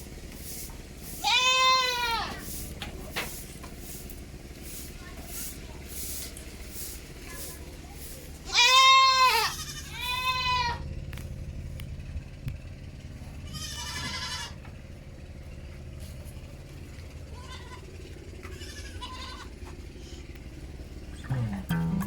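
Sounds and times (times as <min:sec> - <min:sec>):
goats bleating: 0:01.1 - 0:02.5, 0:08.4 - 0:10.8, 0:13.4 - 0:14.7, 0:17.2 - 0:20.2.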